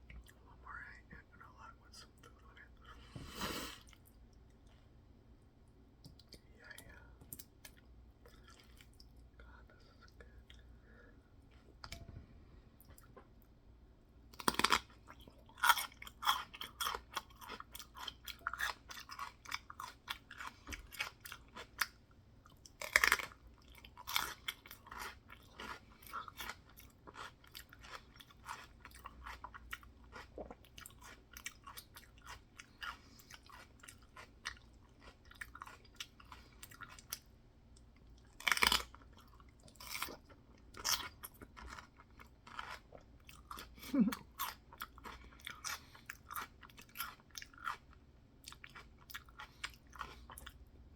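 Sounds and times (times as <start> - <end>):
open-mouthed chewing: 6.1 - 9.2, 14.4 - 37.3, 38.2 - 50.6
loud food crunches: 14.3 - 14.9, 22.8 - 29.5, 38.4 - 39.0.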